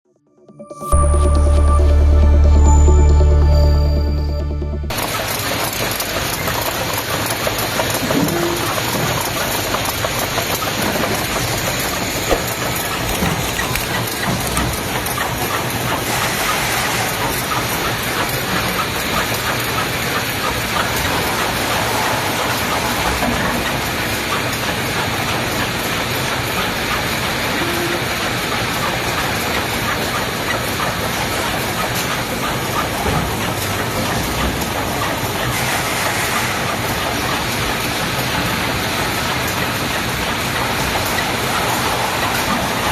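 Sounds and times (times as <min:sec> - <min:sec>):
machinery clattering: 0:07.7 - 0:16.4.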